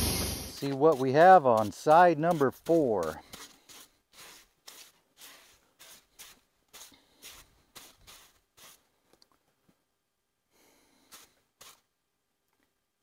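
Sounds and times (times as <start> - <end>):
brushing sawdust off log: 0.0 - 8.9, 11.0 - 11.8.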